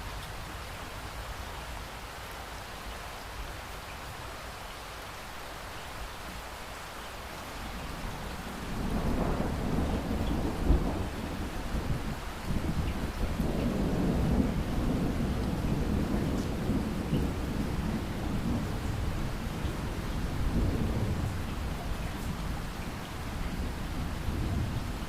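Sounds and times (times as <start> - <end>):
heavy rain: 0.0 - 25.0
thunder rolling: 8.6 - 22.7.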